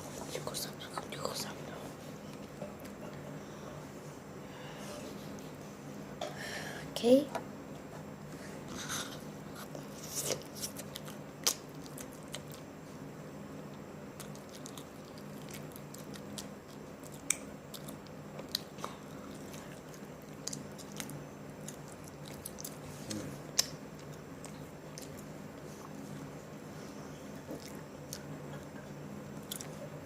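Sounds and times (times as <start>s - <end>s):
faint steady hum: 0.0s - 30.0s
chewing with mouth smacks: 9.6s - 12.7s, 14.2s - 26.4s, 27.2s - 30.0s.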